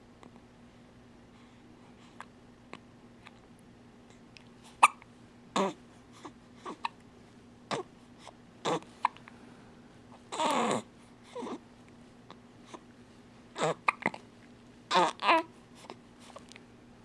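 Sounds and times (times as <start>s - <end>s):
person hiccuping: 4.8s - 5.0s.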